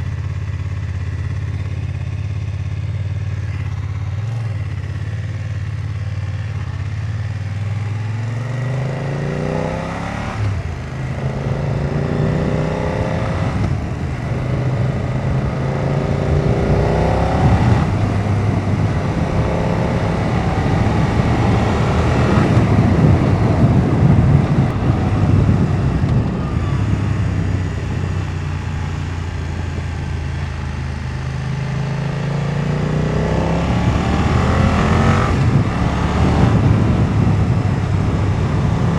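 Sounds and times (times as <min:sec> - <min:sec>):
motorcycle engine accelerating: 0:00.0 - 0:38.9
rushing wind: 0:08.3 - 0:38.9.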